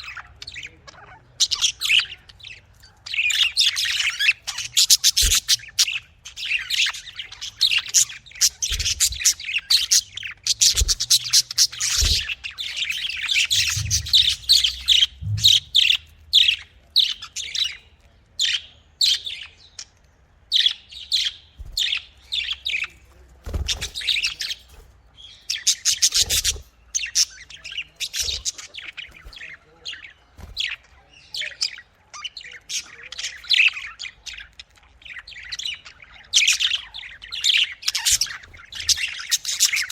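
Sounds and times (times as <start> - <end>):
budgerigars chirping: 0.0 - 39.9
soft low thuds: 10.6 - 12.5, 13.4 - 16.6.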